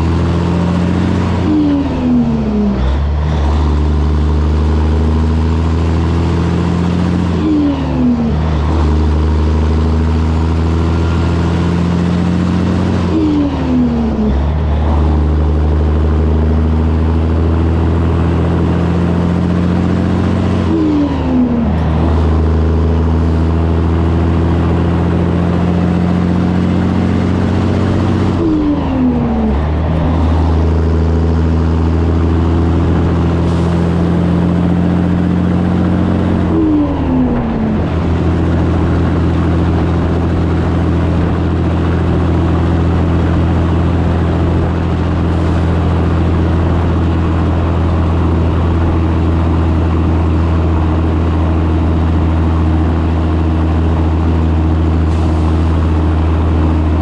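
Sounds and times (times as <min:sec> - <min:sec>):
truck diesel engine running: 0:00.0 - 0:57.0.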